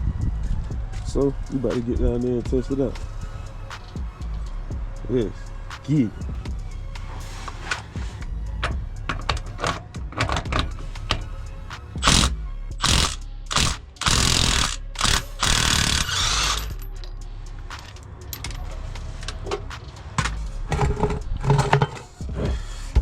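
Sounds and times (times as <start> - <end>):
metal tools clanking and scraping: 8.6 - 11.3, 16.0 - 22.2.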